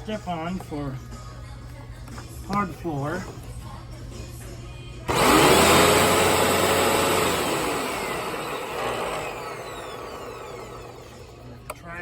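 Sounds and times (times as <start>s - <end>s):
vacuum cleaner motor whirring: 5.1s - 11.4s.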